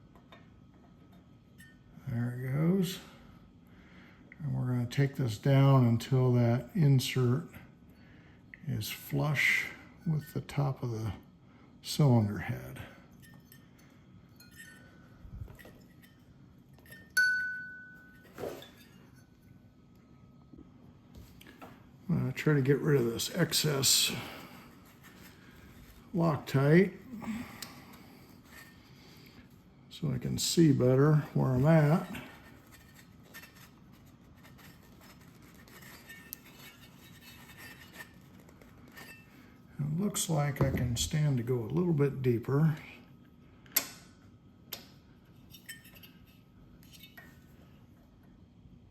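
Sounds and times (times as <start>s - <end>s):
metal tool clink ringing: 16.8s - 19.3s.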